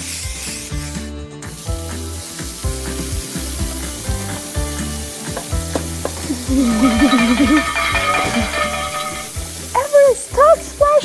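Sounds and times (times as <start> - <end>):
background music: 0.0 - 11.0
water running and splashing: 1.6 - 11.0.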